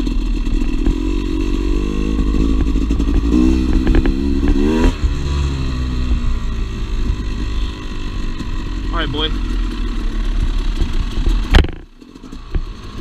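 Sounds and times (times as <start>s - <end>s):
dirt bike engine revving: 0.0s - 13.0s
sharp clattering knocks: 2.1s - 5.4s, 9.4s - 12.8s.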